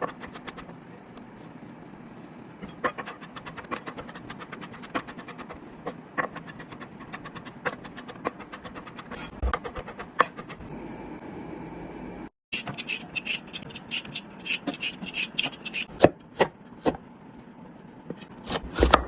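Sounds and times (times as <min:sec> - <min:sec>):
knife chopping on cutting board: 0:18.1 - 0:19.0.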